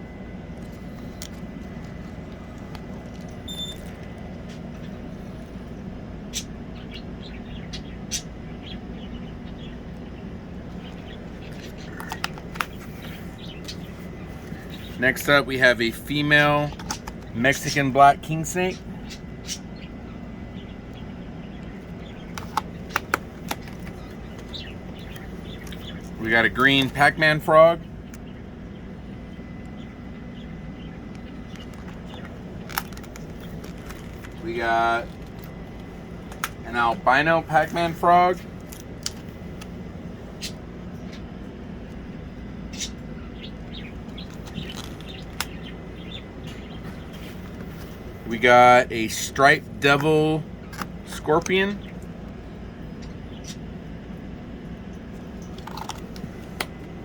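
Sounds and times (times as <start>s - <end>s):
steady background hum: 0.0s - 57.0s
packaging clicks and taps: 22.3s - 25.8s, 31.1s - 34.4s, 35.1s - 36.6s.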